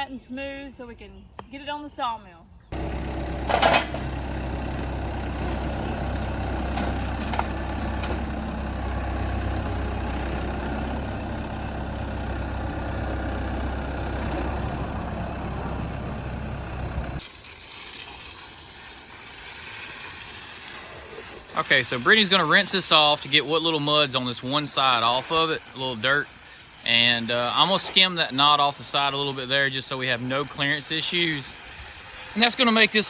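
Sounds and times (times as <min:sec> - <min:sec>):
heavy engine running: 0:02.7 - 0:17.2, 0:21.6 - 0:33.0
water spraying from hose: 0:17.2 - 0:33.0.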